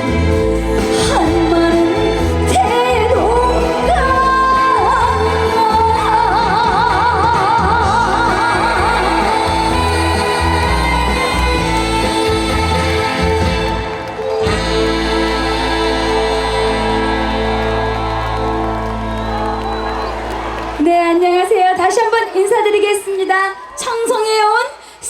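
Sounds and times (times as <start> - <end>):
woman singing: 0.0 - 18.4
live band accompaniment: 0.0 - 22.0.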